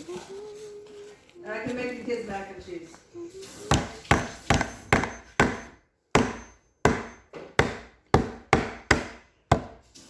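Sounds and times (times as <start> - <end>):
hammer striking nail into wood: 3.7 - 9.9.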